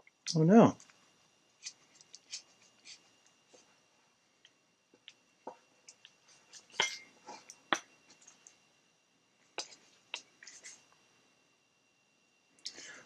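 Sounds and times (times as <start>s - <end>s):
faint high whine: 0.0s - 13.0s.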